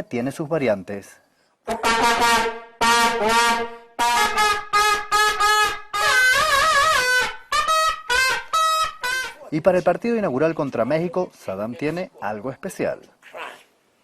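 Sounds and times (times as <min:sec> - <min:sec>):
vuvuzela horn blasts: 0:01.7 - 0:09.5.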